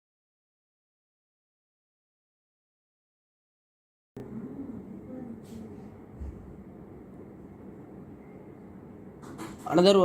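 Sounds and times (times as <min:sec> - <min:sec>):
room noise with low hum: 0:04.2 - 0:10.0.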